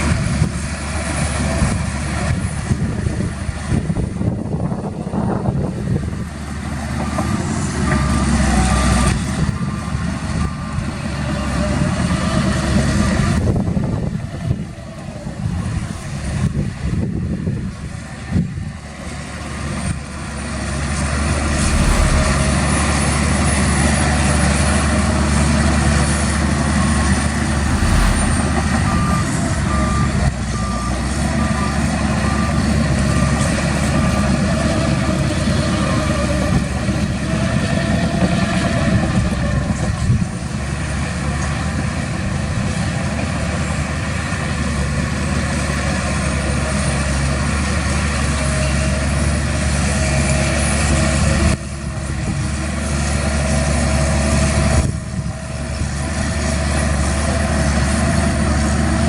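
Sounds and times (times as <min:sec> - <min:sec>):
diesel machinery running: 0:05.8 - 0:59.0
reversing alarm beeping: 0:21.3 - 0:22.6, 0:26.7 - 0:33.4.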